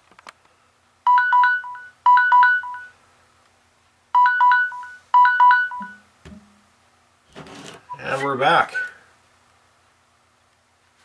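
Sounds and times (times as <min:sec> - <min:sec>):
phone timer alarm melody: 0:01.1 - 0:02.9, 0:04.2 - 0:06.0.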